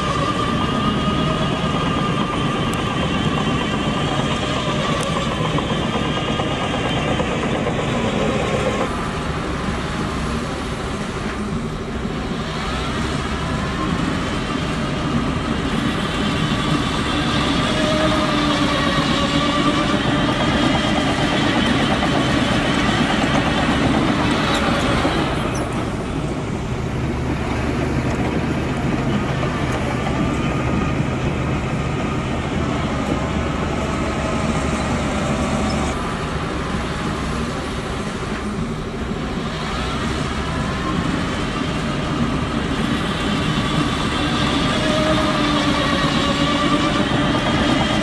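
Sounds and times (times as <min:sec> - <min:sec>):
bulldozer diesel engine under load: 0:00.0 - 0:48.0.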